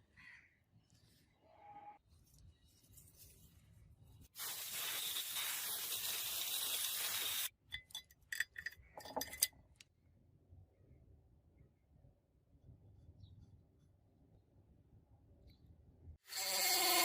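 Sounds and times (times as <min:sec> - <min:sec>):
loud steady hiss: 0:04.4 - 0:07.5.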